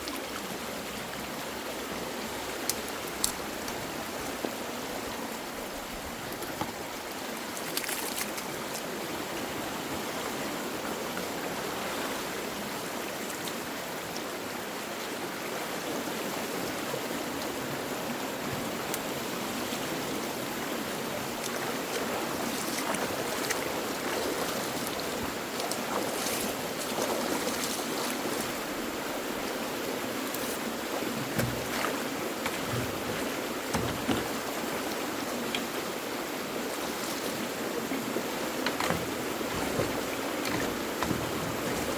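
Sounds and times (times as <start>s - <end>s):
water rushing through culvert: 0.0s - 41.9s
small clicks and splashes: 2.6s - 3.8s, 6.2s - 8.9s, 21.4s - 28.5s, 30.3s - 35.8s, 38.6s - 41.9s.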